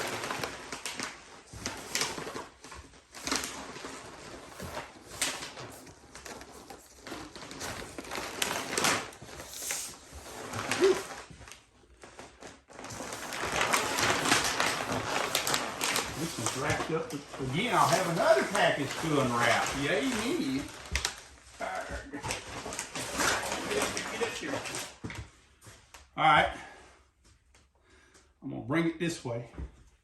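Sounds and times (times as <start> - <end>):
leather rustling and scraping: 12.8 - 21.8.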